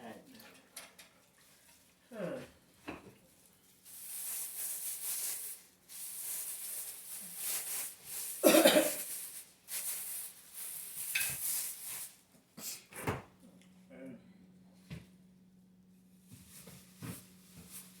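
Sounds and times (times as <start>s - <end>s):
high hissy rustling: 3.8s - 12.9s, 16.2s - 18.0s
person coughing: 8.4s - 9.1s.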